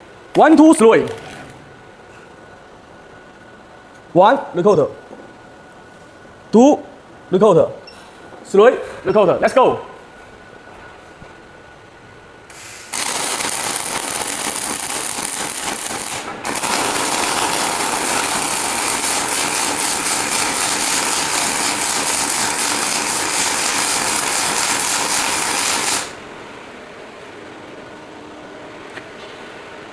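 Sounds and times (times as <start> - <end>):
steady hum: 8.5 - 28.9
welding arc crackling: 12.5 - 26.3.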